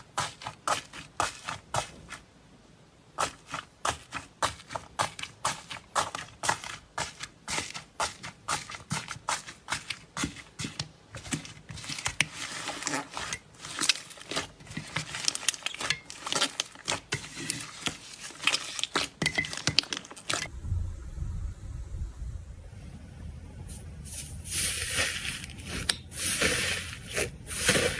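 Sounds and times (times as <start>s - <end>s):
slime crackling and popping: 11.8s - 20.5s
low hum: 20.5s - 26.2s.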